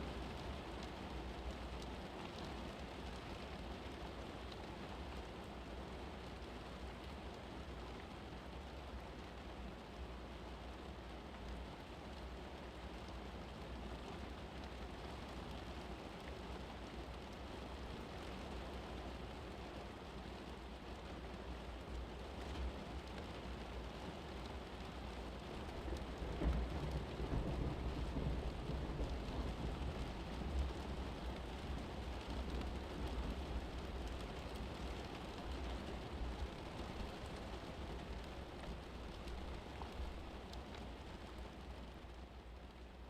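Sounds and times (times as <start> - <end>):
steady rain falling: 0.0 - 43.0
thunder rumbling: 26.2 - 32.1.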